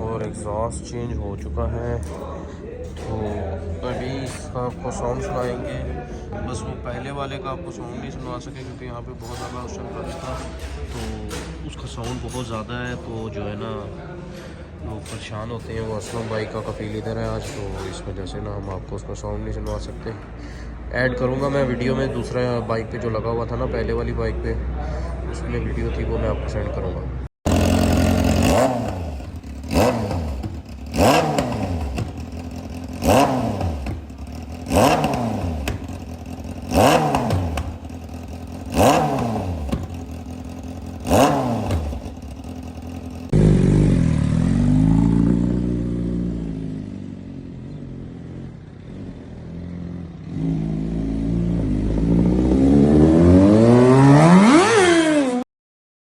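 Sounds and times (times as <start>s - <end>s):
motorcycle engine revving: 27.5s - 55.5s.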